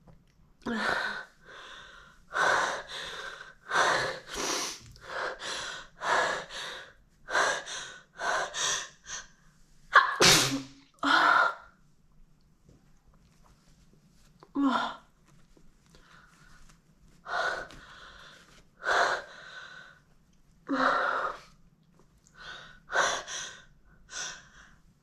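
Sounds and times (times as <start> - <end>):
woman sneezing: 10.0 - 10.8.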